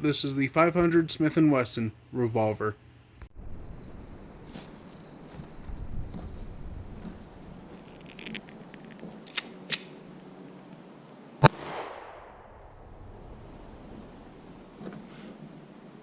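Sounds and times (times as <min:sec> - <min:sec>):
metallic handling clicks: 0:07.9 - 0:09.9
pistol shot with echo: 0:11.4 - 0:12.7.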